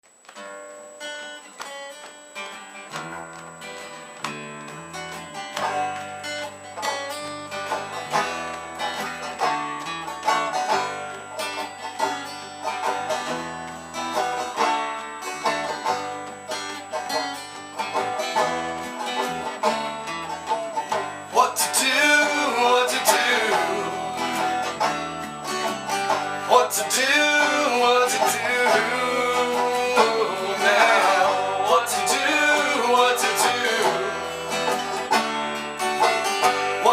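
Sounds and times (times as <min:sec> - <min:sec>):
bluegrass banjo and guitar music: 0:01.5 - 0:36.9
person singing: 0:21.3 - 0:24.9, 0:26.4 - 0:35.2, 0:36.0 - 0:36.9.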